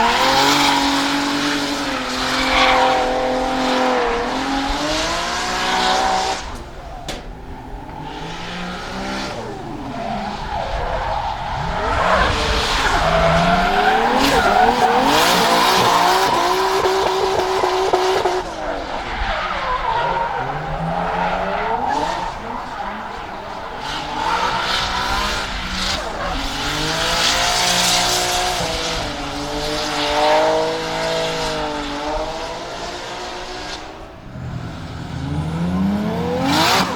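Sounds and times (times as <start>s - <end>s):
car engine revving hard: 0.0s - 36.9s
tyres squealing and skidding: 0.0s - 36.9s.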